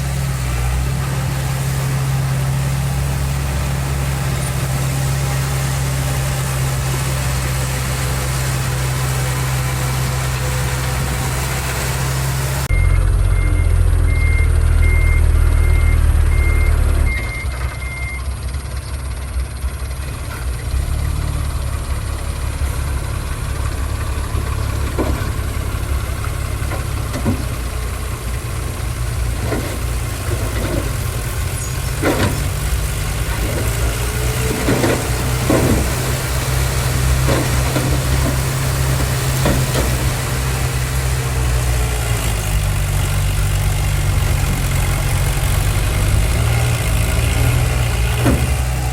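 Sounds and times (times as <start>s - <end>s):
diesel engines rumbling: 0.0s - 48.9s
reversing alarm beeping: 12.7s - 18.3s.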